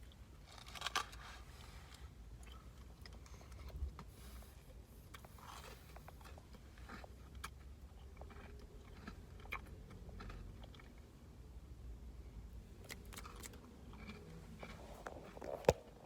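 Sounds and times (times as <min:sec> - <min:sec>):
person chewing food: 0:01.9 - 0:11.1, 0:12.5 - 0:16.0.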